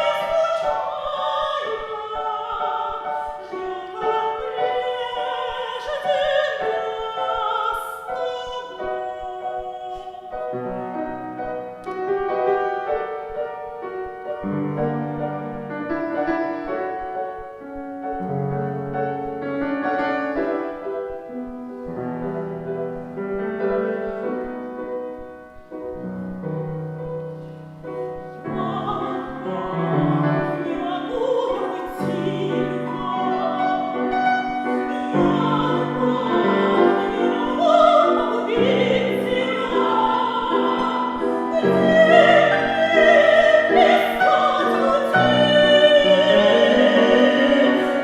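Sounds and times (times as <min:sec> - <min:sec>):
woman singing operatically: 0:00.0 - 0:10.9, 0:28.4 - 0:48.0
piano chords: 0:00.0 - 0:48.0.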